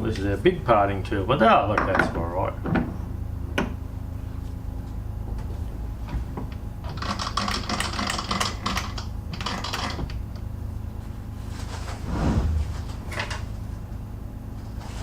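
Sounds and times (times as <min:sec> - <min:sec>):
steady low hum: 0:00.0 - 0:06.9, 0:10.1 - 0:15.0.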